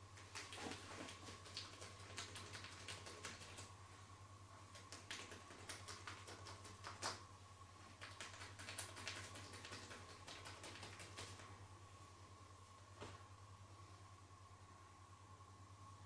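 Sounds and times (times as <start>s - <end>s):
electrical hum: 0.0s - 16.0s
hands clicking and tapping: 0.2s - 3.7s, 4.7s - 7.2s, 8.0s - 11.5s.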